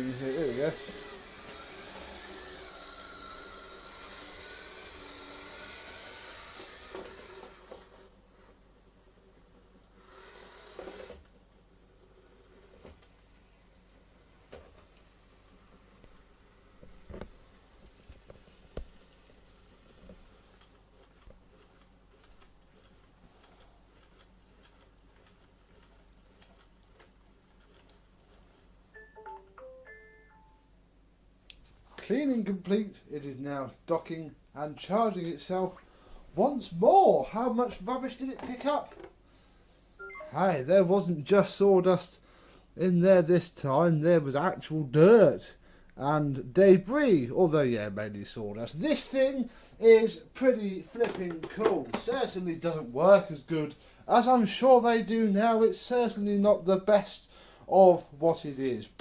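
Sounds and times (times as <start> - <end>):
robot vacuum running: 0.0 - 8.2, 10.0 - 11.3
electronic beep tune: 40.0 - 40.4.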